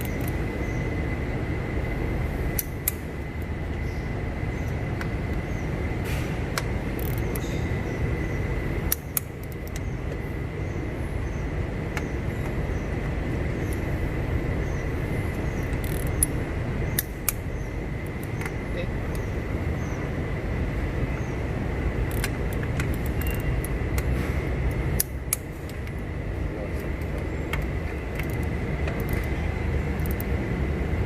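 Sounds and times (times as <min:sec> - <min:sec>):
low mechanical rumble: 0:00.0 - 0:31.0.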